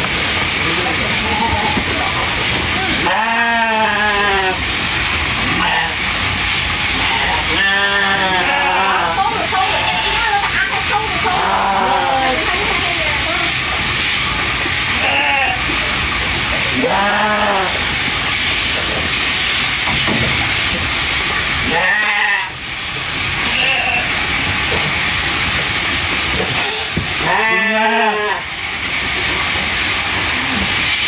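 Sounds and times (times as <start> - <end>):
steady hiss: 0.0 - 31.0
sheep bleating: 3.0 - 4.6, 5.5 - 6.0, 7.0 - 10.3, 16.8 - 17.8, 21.7 - 22.5, 27.2 - 28.5.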